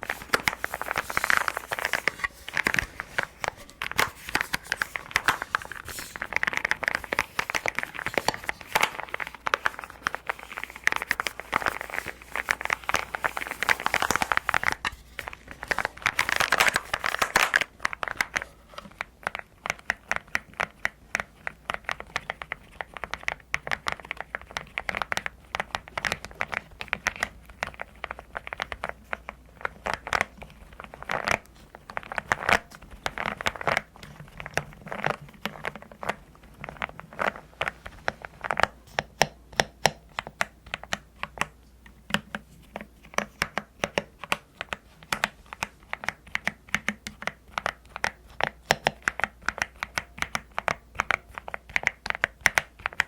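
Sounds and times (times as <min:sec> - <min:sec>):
packaging crinkling: 0:00.0 - 0:19.6.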